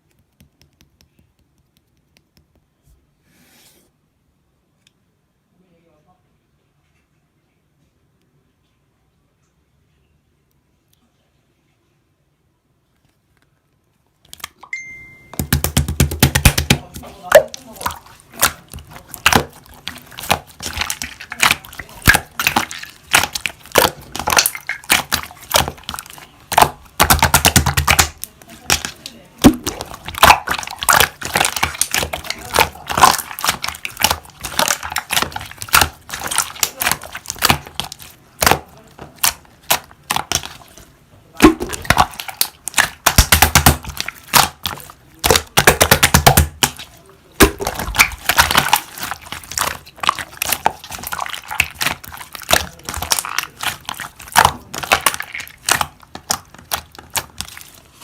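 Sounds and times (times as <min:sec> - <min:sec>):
slime squished by hand popping: 0:15.4 - 0:40.7, 0:41.4 - 0:57.8.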